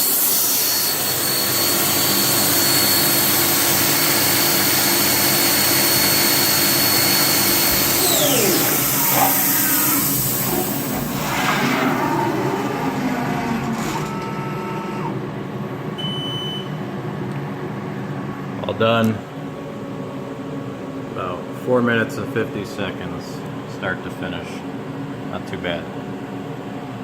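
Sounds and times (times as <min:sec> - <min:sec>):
mill spindle whining: 0:00.0 - 0:15.7
low machine hum: 0:00.0 - 0:27.0.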